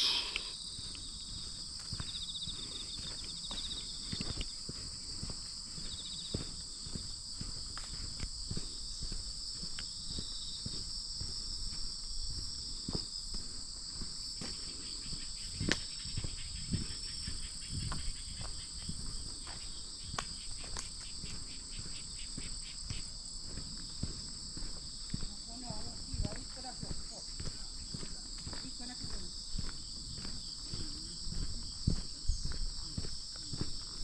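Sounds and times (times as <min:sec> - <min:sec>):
footsteps: 0:00.0 - 0:00.6
sharp click: 0:00.0 - 0:00.6
insect ticking pulses: 0:00.0 - 0:01.0
insects trilling: 0:00.0 - 0:34.0.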